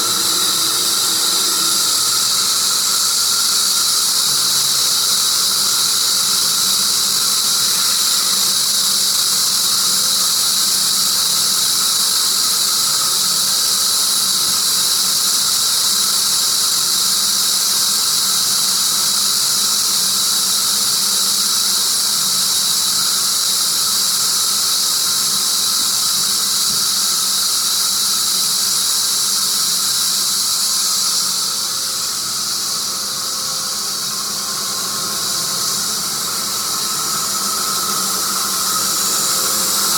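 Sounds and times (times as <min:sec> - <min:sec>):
sawmill cutting log: 0:00.0 - 0:04.8, 0:34.0 - 0:39.9.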